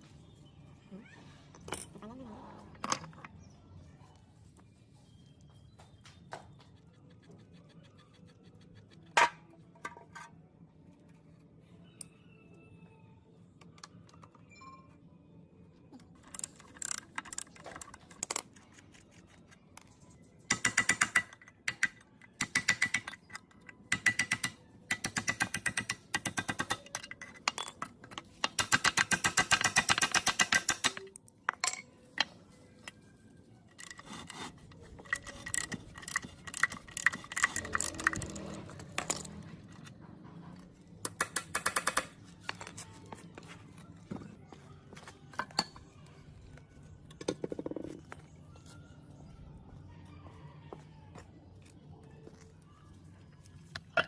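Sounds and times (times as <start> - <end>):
gearbox parts clicking and rattling: 16.0 - 31.8, 33.7 - 42.9.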